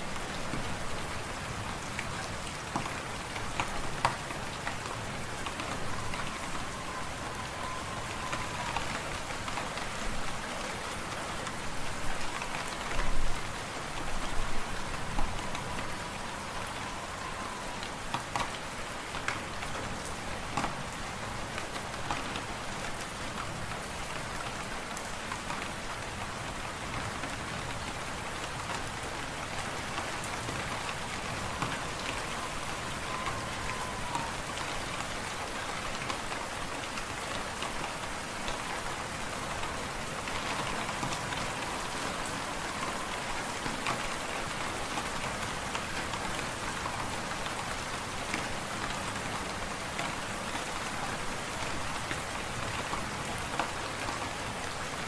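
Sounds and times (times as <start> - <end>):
hiss of wind and snowstorm: 0.0 - 55.0
faint rising whistle: 5.6 - 9.2, 14.7 - 18.1, 30.9 - 35.2.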